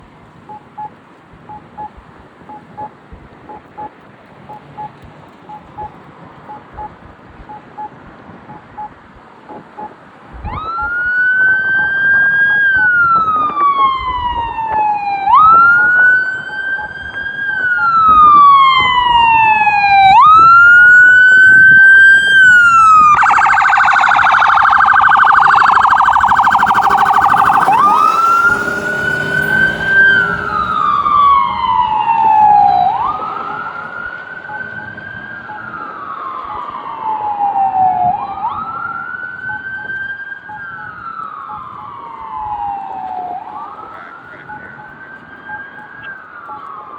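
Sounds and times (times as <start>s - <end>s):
ambulance siren wailing: 10.4s - 46.9s
siren yelp: 10.4s - 46.9s.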